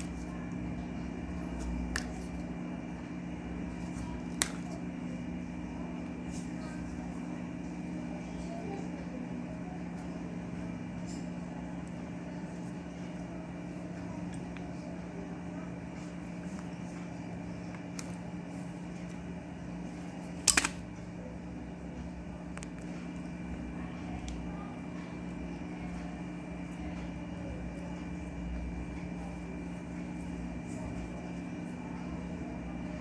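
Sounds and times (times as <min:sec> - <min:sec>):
steady low hum: 0:00.0 - 0:33.0
hand tool and wire clicks: 0:20.4 - 0:20.8.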